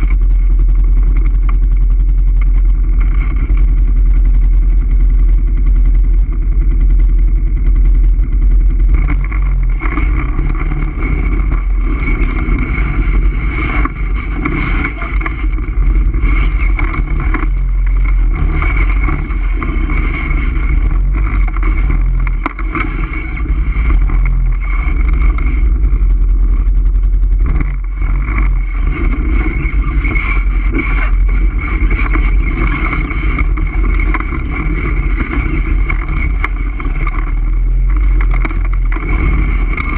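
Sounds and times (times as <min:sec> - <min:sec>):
atv engine rumbling: 0:00.0 - 0:39.9.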